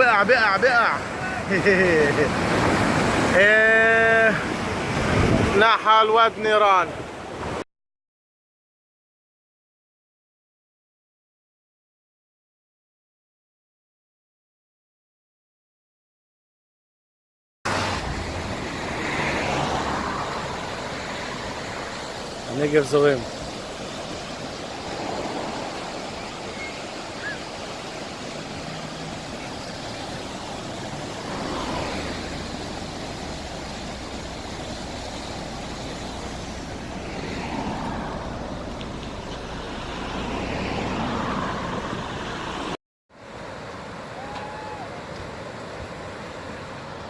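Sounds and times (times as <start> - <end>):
flood water rushing: 0.0 - 7.6, 17.7 - 47.0.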